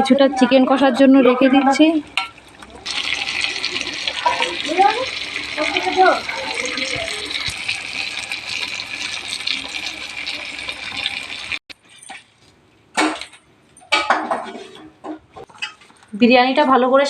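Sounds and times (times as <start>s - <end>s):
running water hiss: 2.8s - 11.6s
cookware clinks and knocks: 13.0s - 15.8s.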